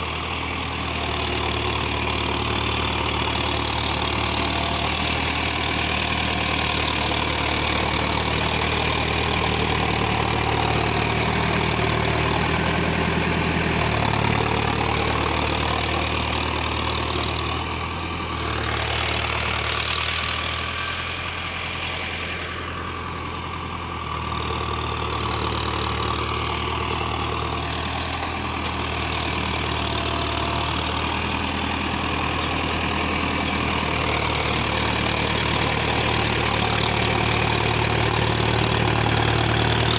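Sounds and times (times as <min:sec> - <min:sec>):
tractor diesel engine idling: 0:00.0 - 0:39.9.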